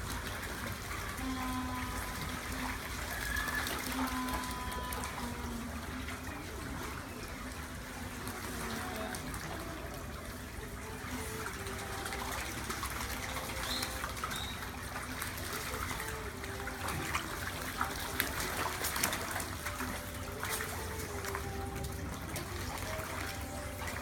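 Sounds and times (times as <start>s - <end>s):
faint voices: 0.0s - 24.0s
water rushing and trickling: 0.0s - 24.0s.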